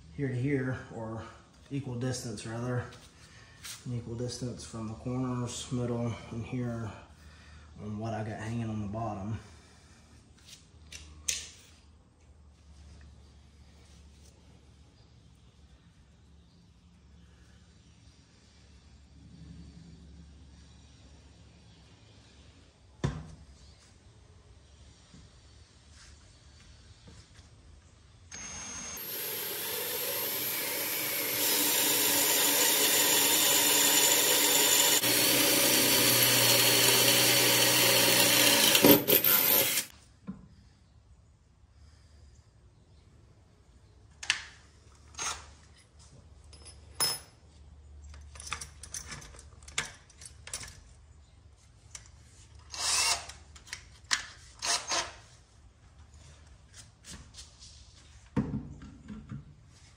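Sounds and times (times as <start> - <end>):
power tool whining: 28.3 - 39.9.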